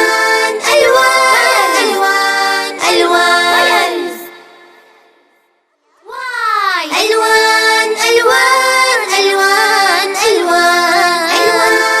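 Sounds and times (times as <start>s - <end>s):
child and woman singing: 0.0s - 4.3s, 6.9s - 12.0s.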